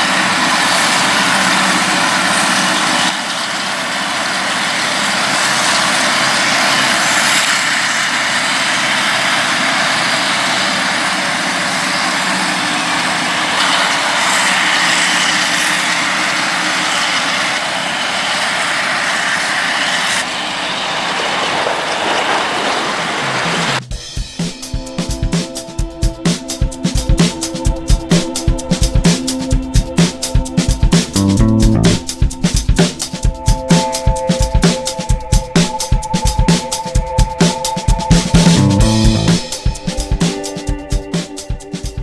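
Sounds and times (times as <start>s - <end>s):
harvester machine running with hiss: 0.0s - 23.8s.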